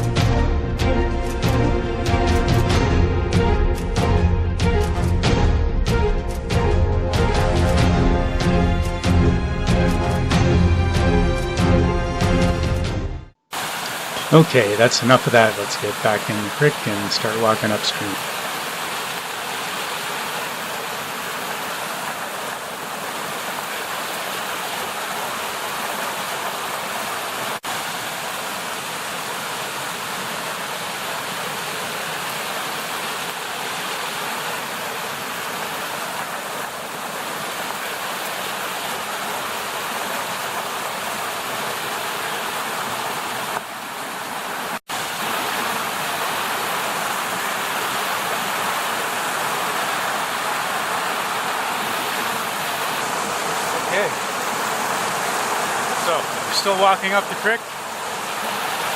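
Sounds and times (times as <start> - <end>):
creek water rushing over rocks: 13.5 - 58.9.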